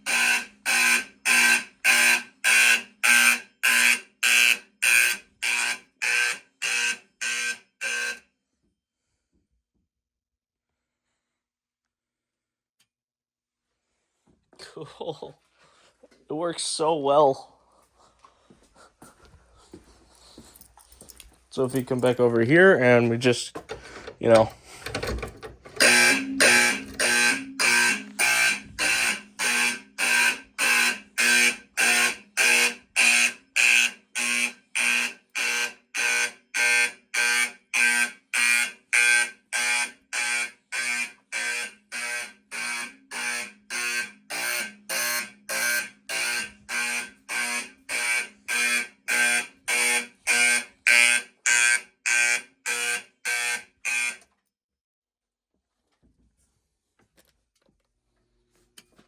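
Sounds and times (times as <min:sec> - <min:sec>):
fire alarm horn pulsing: 0:00.0 - 0:08.2, 0:25.7 - 0:54.2.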